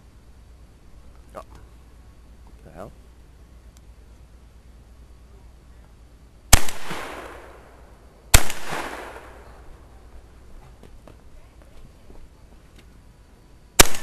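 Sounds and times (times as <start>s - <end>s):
shotgun shots with echo: 6.5s - 7.7s, 8.3s - 9.5s, 13.8s - 14.0s.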